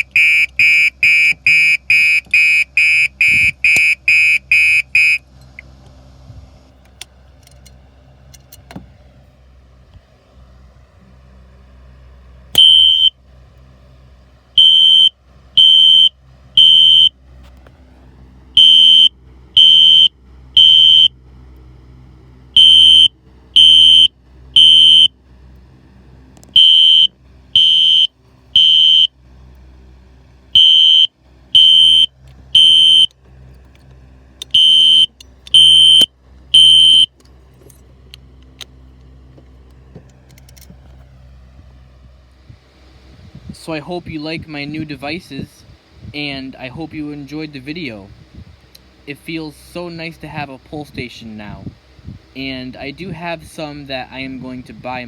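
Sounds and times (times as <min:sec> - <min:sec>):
loud high-pitched alarm beeps: 0:00.0 - 0:05.2, 0:12.6 - 0:13.2, 0:14.6 - 0:17.2, 0:18.6 - 0:21.1, 0:22.6 - 0:25.1, 0:26.6 - 0:29.1, 0:30.6 - 0:33.1, 0:34.5 - 0:37.1
short beep: 0:12.6 - 0:13.1, 0:30.6 - 0:33.1, 0:34.6 - 0:37.1.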